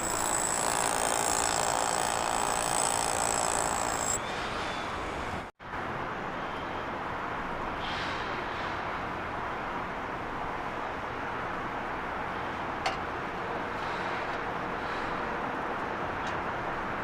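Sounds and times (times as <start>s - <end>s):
heavy machinery: 0.0s - 5.4s
city background noise: 0.0s - 17.0s.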